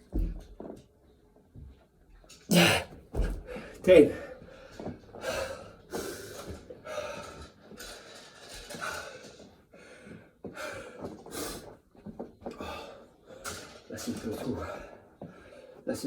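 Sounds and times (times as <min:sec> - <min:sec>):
man gasping and breathing hard: 0:02.5 - 0:07.5, 0:12.5 - 0:13.7.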